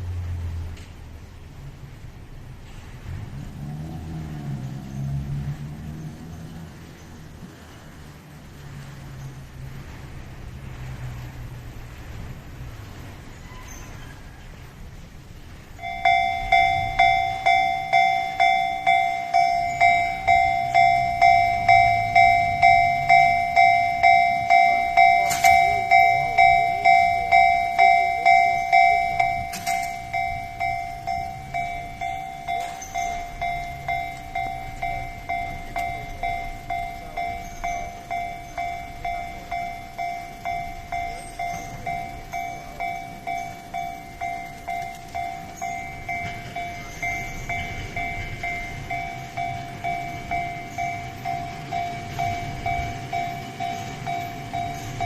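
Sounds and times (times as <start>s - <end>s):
level crossing alarm ding: 15.8s - 55.0s.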